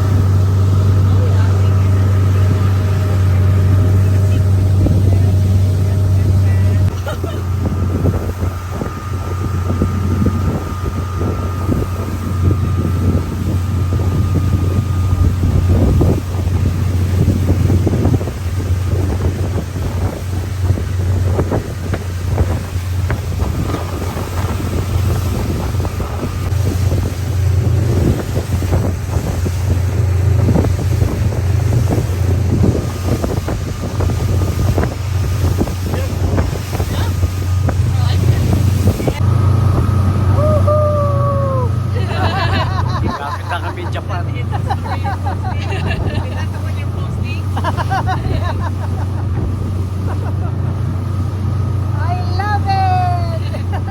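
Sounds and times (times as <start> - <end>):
motorboat engine drone: 0.0 - 53.9
wind buffeting microphone: 0.0 - 53.9.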